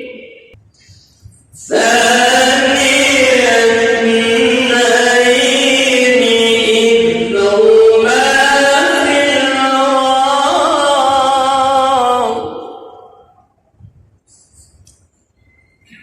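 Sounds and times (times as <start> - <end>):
man chanting melodically: 1.6 - 13.3.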